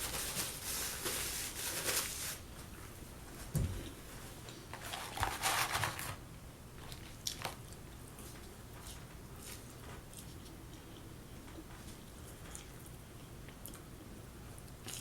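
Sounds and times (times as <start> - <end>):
chewing with wet mouth clicks: 12.2 - 13.9, 14.6 - 15.0.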